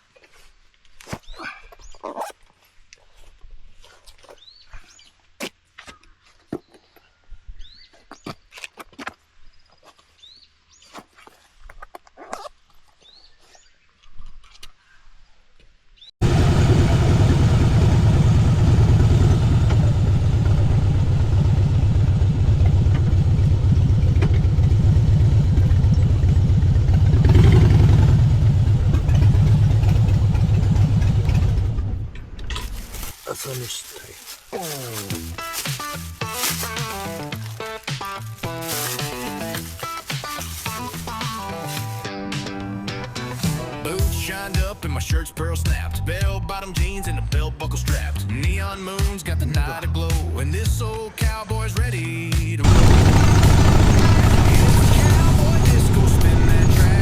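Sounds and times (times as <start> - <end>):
motorcycle engine running: 16.2 - 33.2, 34.2 - 42.1, 52.6 - 57.0.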